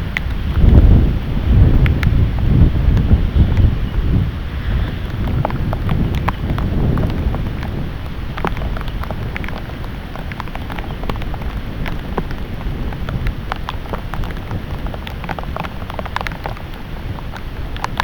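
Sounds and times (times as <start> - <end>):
low rumble: 0.0 - 8.0
heavy rain falling: 0.0 - 18.0
raindrops ticking on a surface: 0.0 - 18.0.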